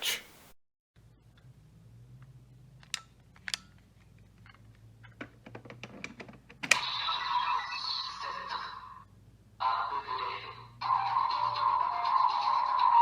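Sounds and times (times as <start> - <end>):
electronic toy sound effects: 6.8 - 9.0, 9.6 - 13.0.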